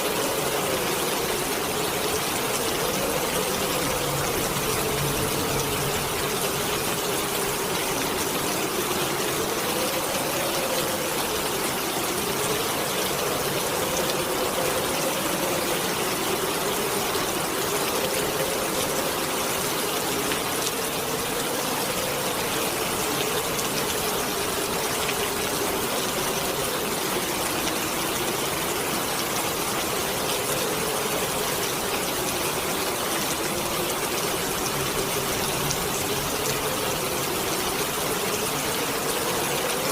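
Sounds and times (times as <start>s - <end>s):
wind howling: 0.0s - 26.9s
heavy rain hissing: 0.0s - 39.9s.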